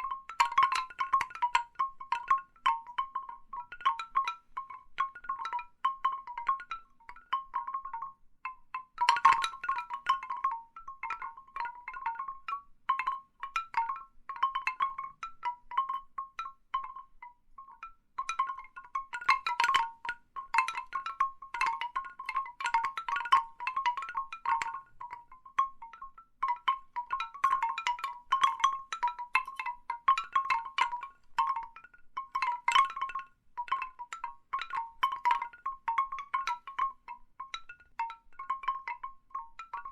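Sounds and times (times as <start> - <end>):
bamboo wind chimes knocking: 0.0 - 39.9.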